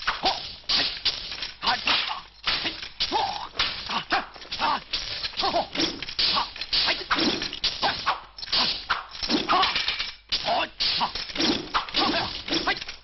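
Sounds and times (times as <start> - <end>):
fighters shouting: 1.6 - 9.8, 10.4 - 12.9.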